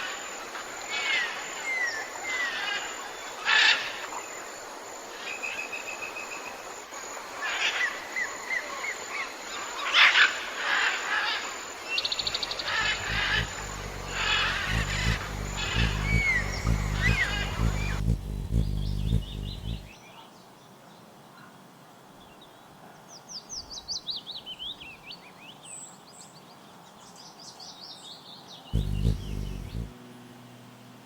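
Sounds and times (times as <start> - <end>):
birds chirping and trilling: 12.1 - 19.9, 28.8 - 29.9
outdoor hiss: 12.2 - 19.9
low humming drone: 12.8 - 19.9, 28.8 - 31.0.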